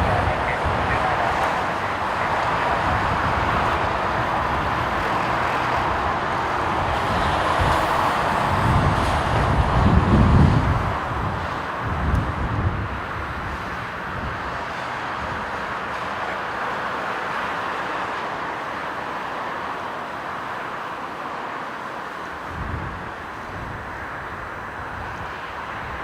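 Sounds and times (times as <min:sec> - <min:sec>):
wind buffeting microphone: 0:00.0 - 0:17.1, 0:22.4 - 0:26.0
jet engine noise: 0:00.0 - 0:26.0.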